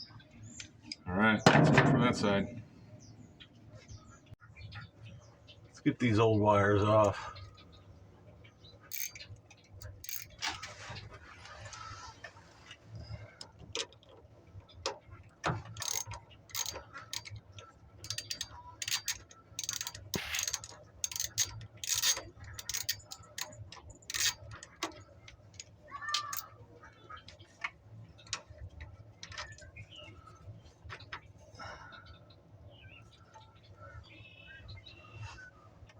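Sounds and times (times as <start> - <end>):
ratchet wrench clicking: 8.9 - 9.2, 9.8 - 10.4, 15.8 - 17.3, 18.0 - 24.4, 26.1 - 26.4.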